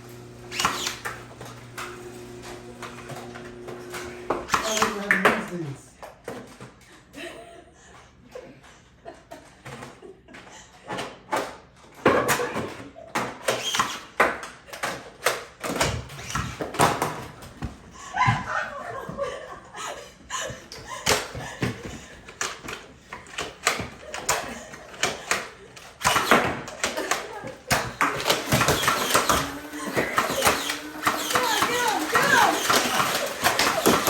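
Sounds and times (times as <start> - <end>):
darts hitting walls and furniture: 3.7 - 5.5, 10.9 - 17.9
bursts of voices: 31.3 - 33.3.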